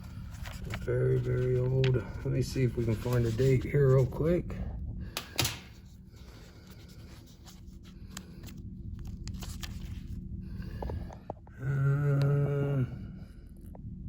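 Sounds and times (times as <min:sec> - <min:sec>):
pages rustling and crackling: 0:00.0 - 0:04.4, 0:05.2 - 0:11.2
low steady hum: 0:00.0 - 0:14.0.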